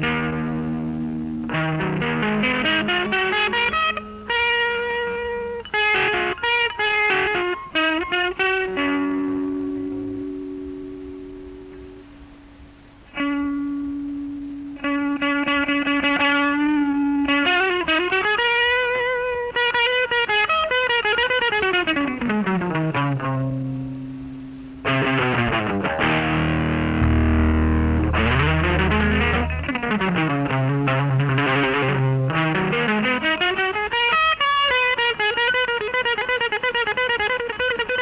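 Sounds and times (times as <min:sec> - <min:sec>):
distorted electric guitar: 0:00.0 - 0:38.0
bass notes: 0:22.9 - 0:33.3.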